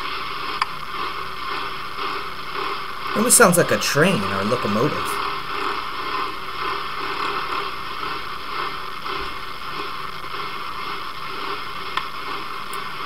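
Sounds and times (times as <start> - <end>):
faint wavering hum: 0.0 - 13.0.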